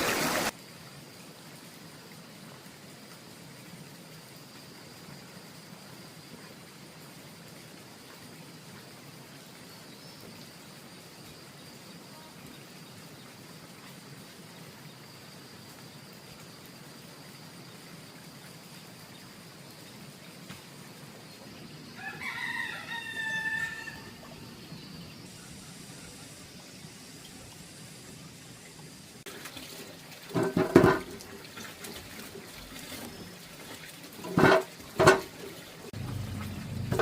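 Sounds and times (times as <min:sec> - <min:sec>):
rooster crowing: 0:21.9 - 0:24.4.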